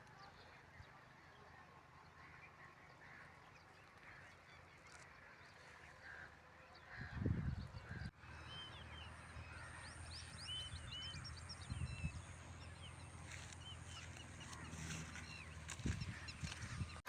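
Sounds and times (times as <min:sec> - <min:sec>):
small birds chirping: 0:00.0 - 0:17.0
steady low hum: 0:07.0 - 0:17.0.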